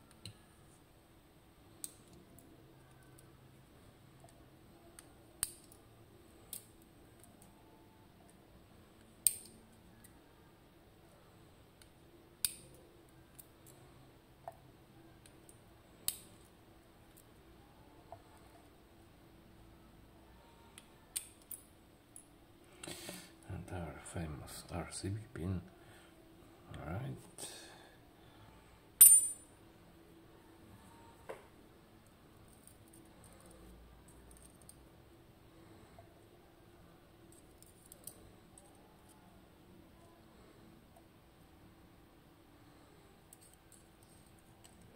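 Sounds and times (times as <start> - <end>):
small metal parts clinking: 29.0 - 29.4.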